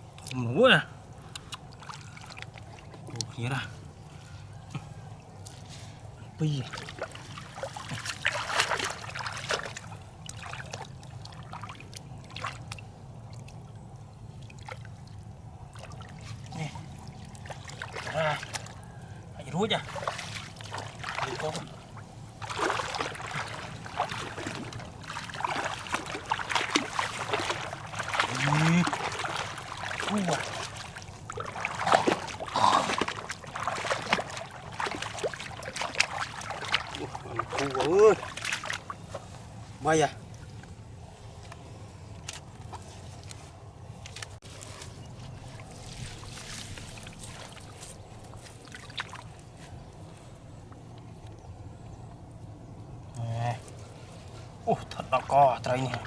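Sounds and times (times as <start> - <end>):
water splashing and trickling: 0.0 - 56.0.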